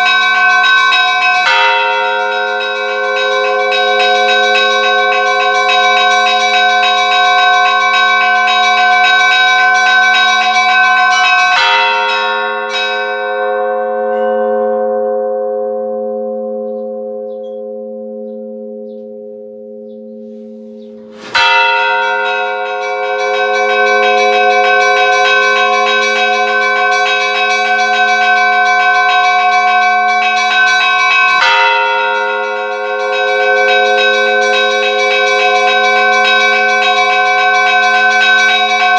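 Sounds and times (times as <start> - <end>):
church bells pealing: 0.0 - 38.9.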